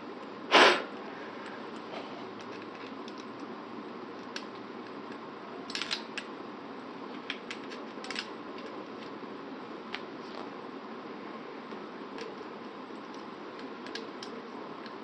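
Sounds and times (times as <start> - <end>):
steady hiss: 0.0 - 1.0.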